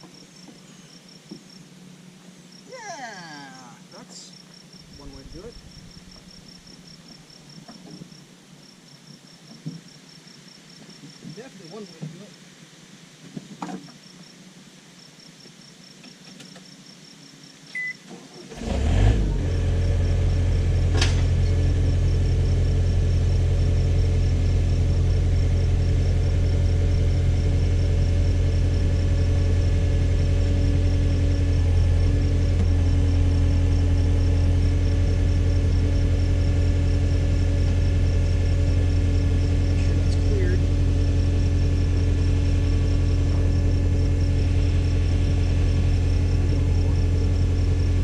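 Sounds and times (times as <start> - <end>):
high insect chirping: 0.0 - 13.2, 13.8 - 18.0, 19.6 - 48.0
backhoe engine cranking and running: 17.8 - 48.0.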